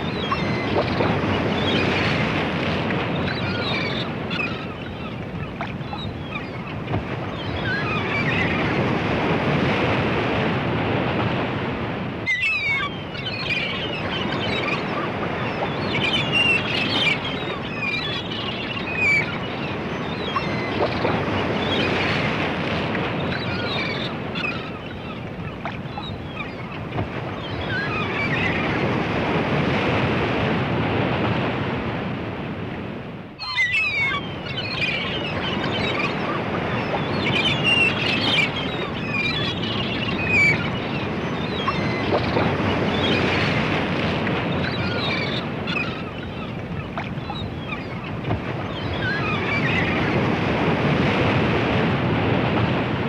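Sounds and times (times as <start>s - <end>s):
seagulls calling: 0.0s - 9.4s, 12.2s - 22.4s, 23.0s - 29.2s, 33.4s - 50.6s
ocean surf washing onto beach: 0.0s - 12.3s, 34.4s - 53.0s.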